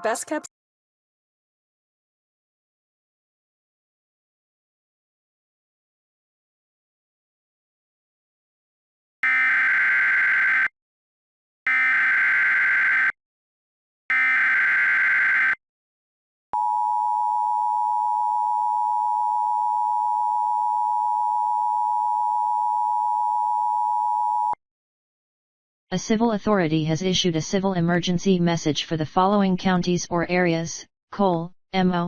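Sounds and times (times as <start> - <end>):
two-tone attention signal: 16.6 - 24.6.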